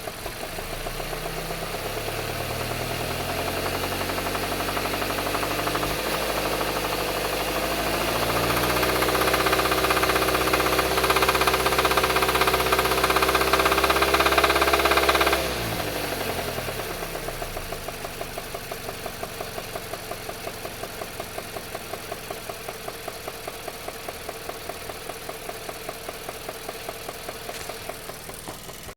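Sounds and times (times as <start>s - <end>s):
car engine revving: 0.0s - 22.7s
engine ticking at idle: 0.0s - 28.9s.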